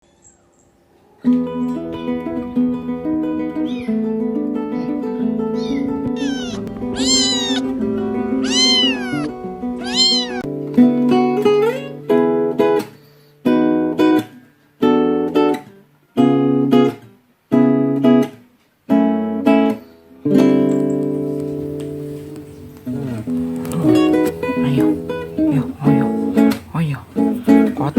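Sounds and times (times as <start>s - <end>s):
guitar music: 1.2s - 15.6s, 17.5s - 27.9s
strummed guitar chords: 1.4s - 12.5s
kitten meowing: 4.7s - 10.5s.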